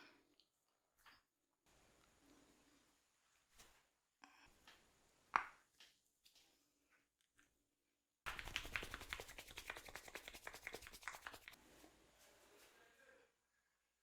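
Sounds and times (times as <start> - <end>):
sharp taps and crackles on hair: 8.3 - 11.6.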